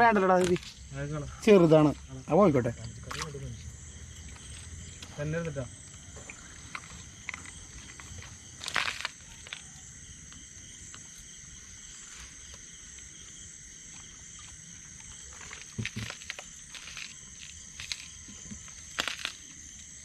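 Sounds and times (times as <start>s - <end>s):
crickets chirring: 0.0s - 20.0s.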